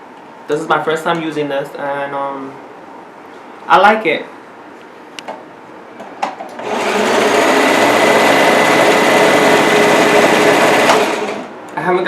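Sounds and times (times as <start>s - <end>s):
sewing machine stitching: 6.6s - 11.5s.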